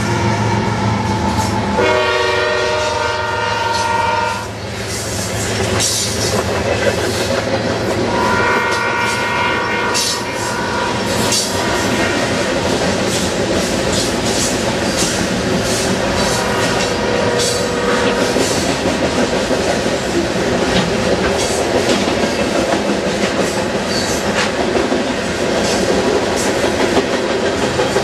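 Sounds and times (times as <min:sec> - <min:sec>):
freight train rumble and wheel clatter: 0:00.0 - 0:28.0
locomotive horn blasts: 0:01.8 - 0:04.6, 0:08.1 - 0:12.4, 0:16.2 - 0:18.5.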